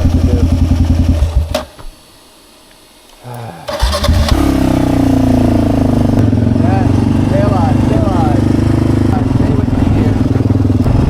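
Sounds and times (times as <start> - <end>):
motorcycle engine running: 0.0 - 1.7, 3.8 - 11.0
motorcycle engine cranking: 3.7 - 4.8.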